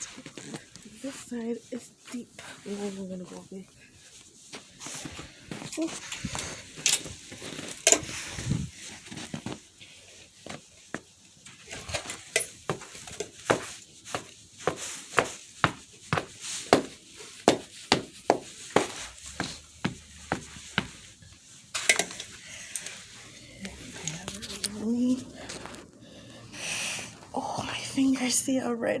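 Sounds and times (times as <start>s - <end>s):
footsteps crunching through snow: 12.7s - 21.4s, 23.7s - 27.4s.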